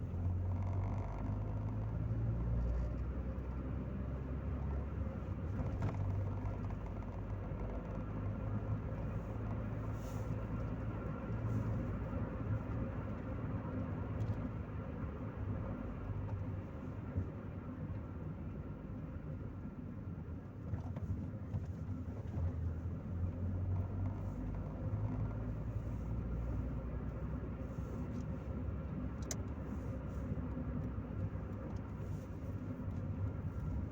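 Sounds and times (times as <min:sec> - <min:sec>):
car engine and road noise: 0:00.0 - 0:33.9.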